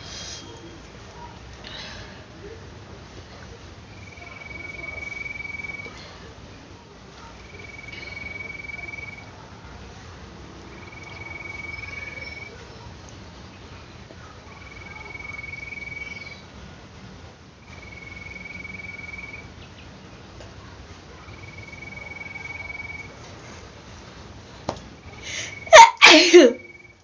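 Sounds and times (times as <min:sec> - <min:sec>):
thin high steady tones: 0:03.8 - 0:09.8, 0:10.6 - 0:12.9, 0:13.5 - 0:16.5, 0:17.6 - 0:19.6, 0:20.6 - 0:23.2, 0:25.0 - 0:27.0
woman sneezing: 0:25.2 - 0:26.7.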